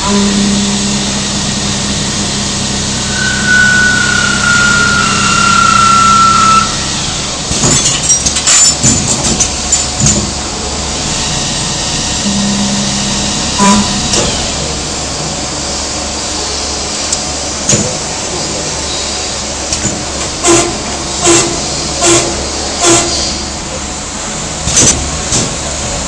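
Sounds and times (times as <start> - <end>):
lathe machine hum: 0.0 - 7.5
high whistling tone: 3.0 - 7.1.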